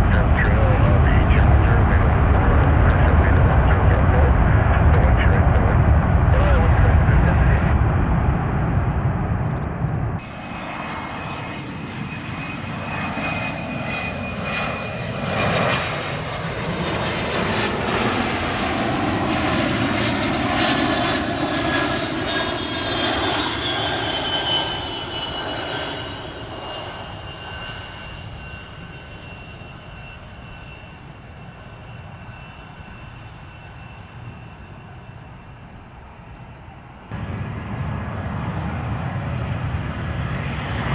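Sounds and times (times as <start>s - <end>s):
loud low rumble: 0.0s - 10.2s, 37.1s - 40.9s
high turbine whine: 0.0s - 40.9s
jet passing overhead: 0.0s - 40.9s.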